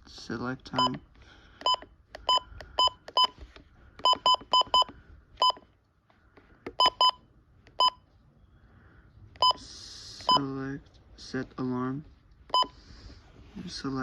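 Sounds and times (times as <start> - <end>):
short electronic beeps: 4.0 - 5.6, 9.4 - 9.6, 12.5 - 12.8.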